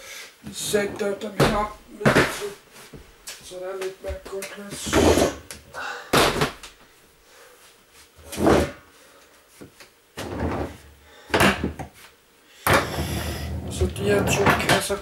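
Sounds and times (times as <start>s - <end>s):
boxes scraping: 8.1s - 8.8s, 10.2s - 10.9s, 12.8s - 14.9s.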